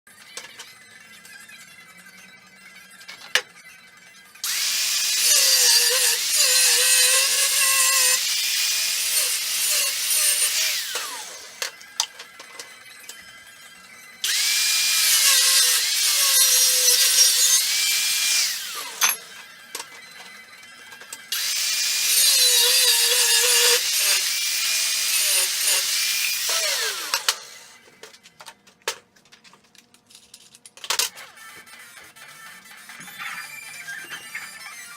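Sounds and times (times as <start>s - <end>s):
power tool whining: 4.4s - 12.4s, 14.2s - 28.0s.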